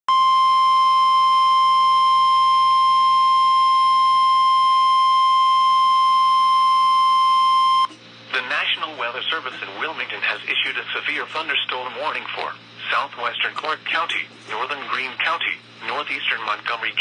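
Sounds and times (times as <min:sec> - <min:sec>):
loud steady alarm beep: 0:00.1 - 0:07.9.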